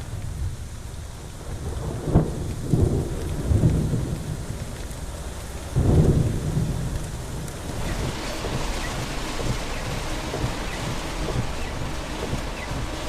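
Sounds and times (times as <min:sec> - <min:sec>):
heavy rain: 0:00.0 - 0:13.0
rolling thunder rumbles: 0:00.0 - 0:13.0
thunder crack: 0:05.8 - 0:13.0.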